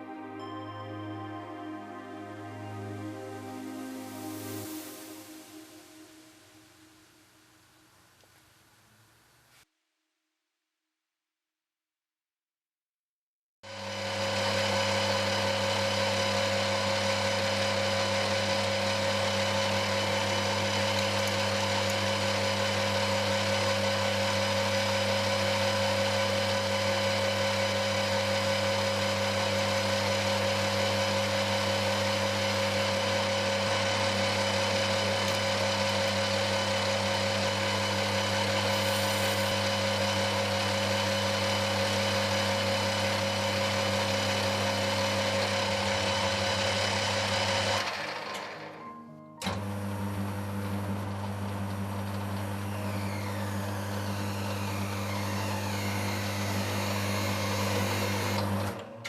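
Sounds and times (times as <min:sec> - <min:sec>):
machine tool motor humming: 0:13.7 - 0:48.7, 0:49.4 - 0:59.0.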